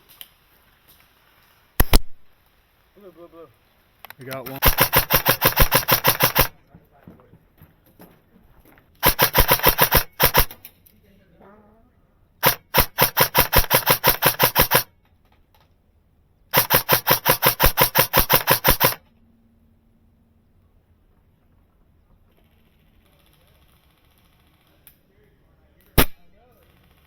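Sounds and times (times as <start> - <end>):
airsoft gun firing bursts: 1.8 - 2.2, 4.5 - 6.6, 9.0 - 10.7, 12.4 - 15.0, 16.5 - 19.0, 26.0 - 27.0.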